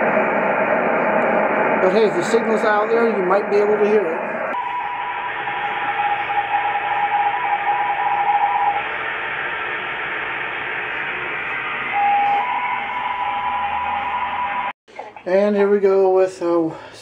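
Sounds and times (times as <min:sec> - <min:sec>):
radio static hiss: 0:01.2 - 0:13.0
steady morse code tones: 0:04.6 - 0:08.9, 0:11.5 - 0:14.7.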